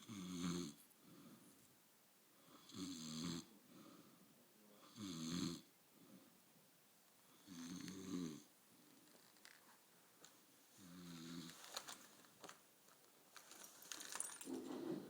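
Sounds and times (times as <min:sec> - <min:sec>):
soft breaths: 0:00.8 - 0:02.7, 0:03.6 - 0:04.9, 0:05.9 - 0:06.5.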